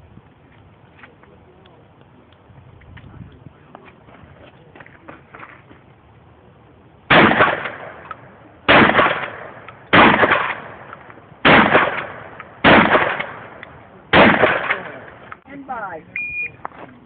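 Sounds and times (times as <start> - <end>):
shotgun shots with echo: 7.1 - 15.3.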